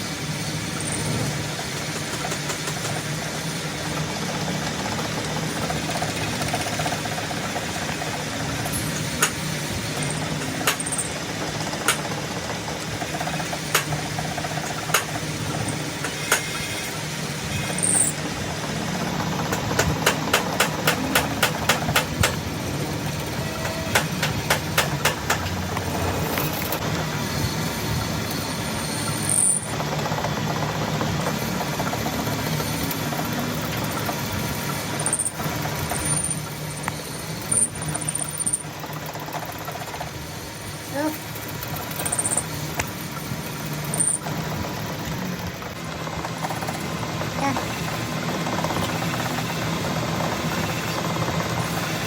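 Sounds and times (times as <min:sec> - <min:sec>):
sharp metallic clicks: 0:05.2 - 0:12.2, 0:12.8 - 0:18.2, 0:19.2 - 0:22.5, 0:23.2 - 0:26.8.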